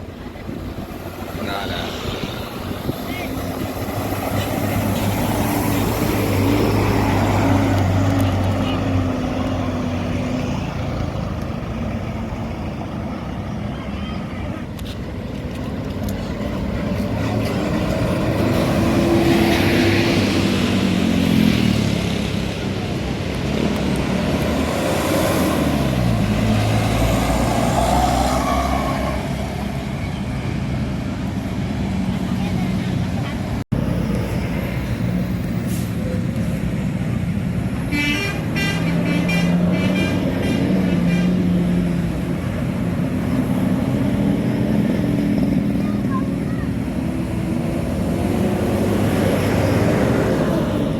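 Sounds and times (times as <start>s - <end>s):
bus driving past: 0.0s - 50.9s
traffic noise: 0.0s - 50.9s
bus musical horn: 37.9s - 41.4s.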